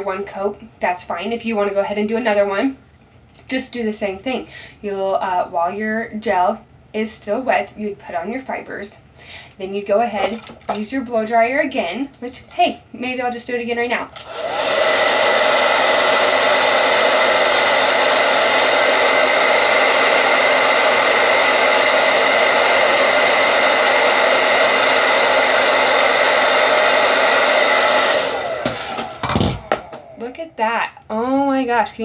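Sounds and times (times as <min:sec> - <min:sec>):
blow dryer whirring: 0:14.1 - 0:30.5
blow dryer winding down: 0:14.2 - 0:30.4.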